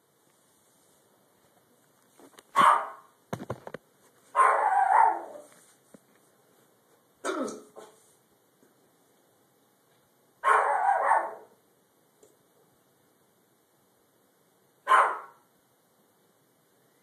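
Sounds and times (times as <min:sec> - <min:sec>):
person hiccupping: 0:07.2 - 0:07.9.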